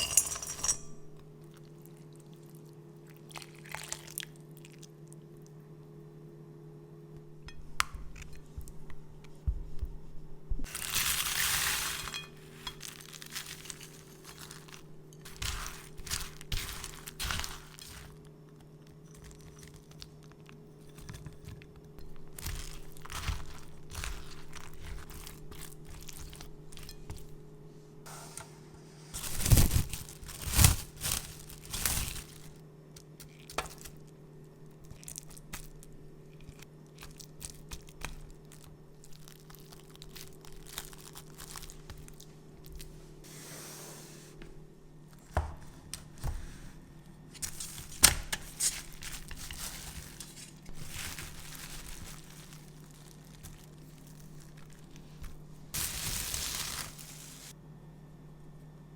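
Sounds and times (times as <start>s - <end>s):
crinkling and tearing packaging: 10.7s - 18.3s, 22.3s - 26.5s, 29.2s - 32.6s, 37.0s - 42.8s, 47.4s - 57.6s
loud cracks and crunches: 29.2s - 32.6s.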